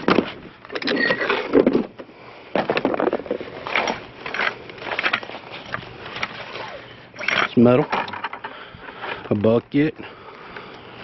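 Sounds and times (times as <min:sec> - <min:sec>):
junk clunking and rattling: 0:00.0 - 0:02.0.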